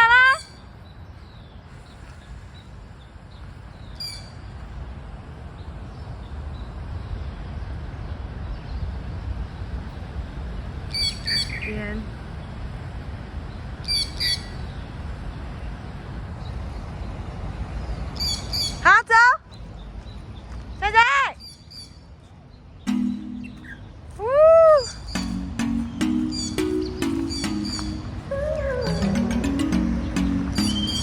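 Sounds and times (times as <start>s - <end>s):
birds chirping: 22.8s - 24.2s, 24.8s - 31.0s
bird falling call: 26.0s - 31.0s.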